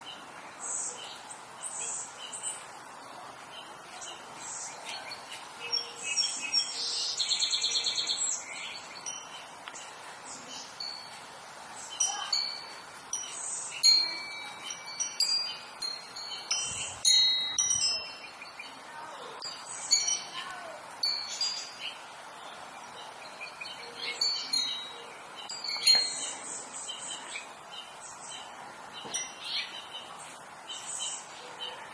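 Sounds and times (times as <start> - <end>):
birds chirping: 0.0 - 31.9.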